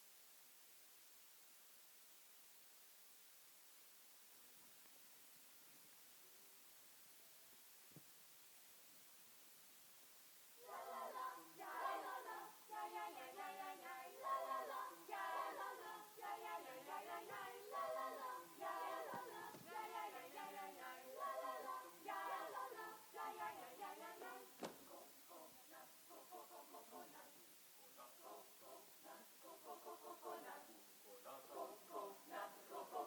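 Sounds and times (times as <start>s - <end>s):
choir singing in harmony: 10.6s - 33.0s.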